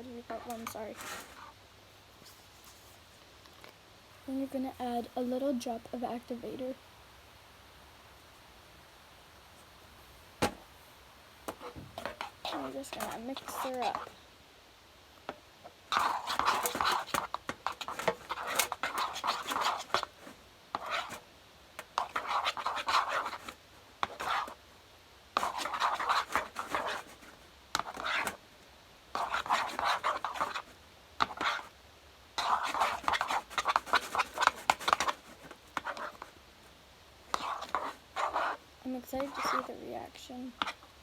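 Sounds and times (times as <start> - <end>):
spoon scraping slime in bowl: 11.5 - 14.1, 32.4 - 35.2, 37.3 - 39.7.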